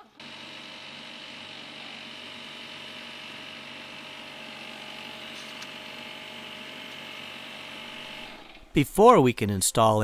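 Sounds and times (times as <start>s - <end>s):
steady multi-tone hum: 3.1s - 10.0s.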